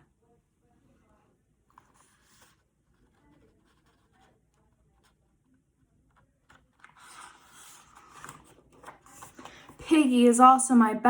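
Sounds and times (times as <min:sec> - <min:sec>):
paper page turning: 0:01.7 - 0:04.3, 0:06.1 - 0:09.8.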